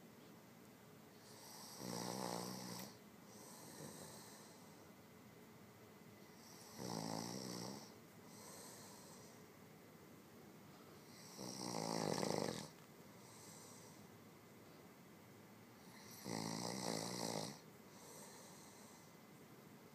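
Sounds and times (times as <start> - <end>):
man snoring: 1.2 - 4.6, 6.4 - 9.3, 11.1 - 14.0, 15.8 - 19.0.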